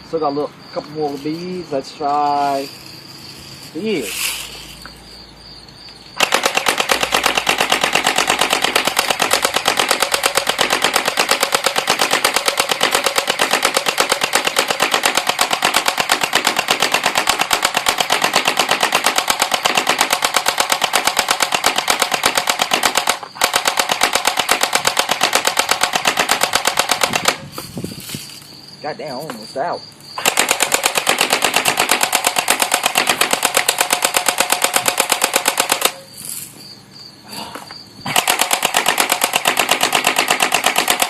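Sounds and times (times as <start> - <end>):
electric bb gun firing full-auto: 6.2 - 27.6, 30.2 - 36.1, 38.0 - 41.0.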